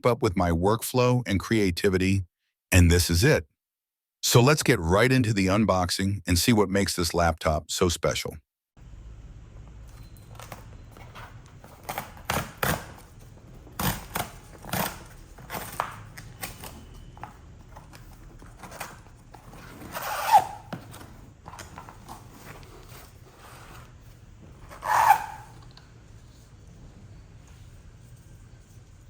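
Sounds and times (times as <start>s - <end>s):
packaging scrape and squeak: 9.9s - 12.3s, 14.5s - 25.6s.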